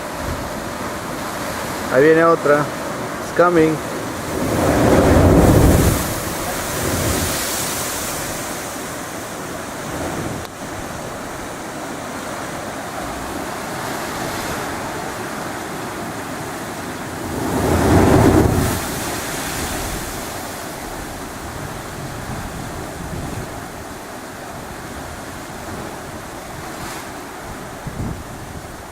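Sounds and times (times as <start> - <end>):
blowhole erupting sea water: 0.0 - 28.9
surf: 0.0 - 28.9
wind on microphone: 4.1 - 9.1, 9.8 - 11.7, 17.0 - 28.9.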